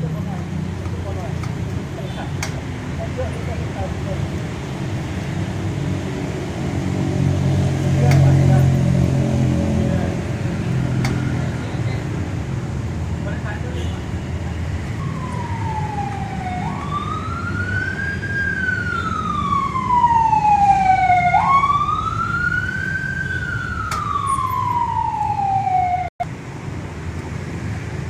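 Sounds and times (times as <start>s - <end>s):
wailing siren: 5.7s - 11.9s, 15.0s - 26.2s.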